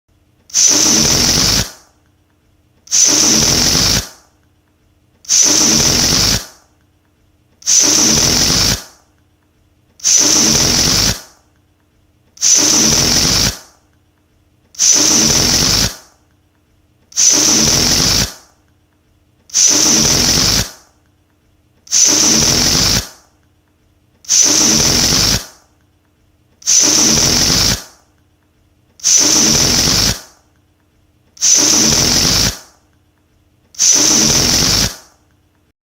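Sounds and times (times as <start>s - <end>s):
balloon deflating with buzzing flutter: 0.5s - 2.0s, 2.8s - 4.3s, 5.2s - 6.7s, 7.6s - 9.1s, 10.0s - 11.4s, 12.4s - 13.8s, 14.7s - 16.2s, 17.1s - 18.6s, 19.5s - 21.0s, 21.8s - 23.3s, 24.2s - 25.7s, 26.6s - 28.1s, 29.0s - 30.5s, 31.4s - 32.8s, 33.7s - 35.2s.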